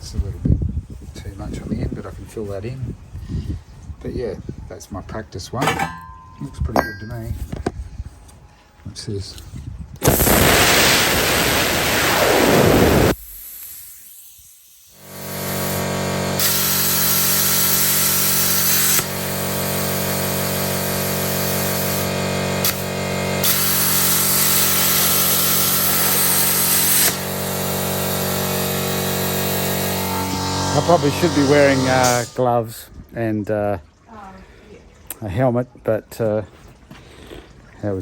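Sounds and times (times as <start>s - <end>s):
welder arc buzzing: 10.0s - 32.4s
welding hiss: 10.0s - 32.4s.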